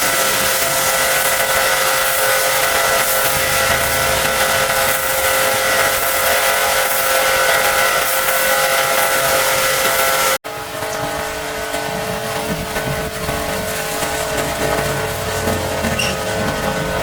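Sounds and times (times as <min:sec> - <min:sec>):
water spray hissing: 0:00.0 - 0:10.4
pressure washer motor whine: 0:00.0 - 0:17.0.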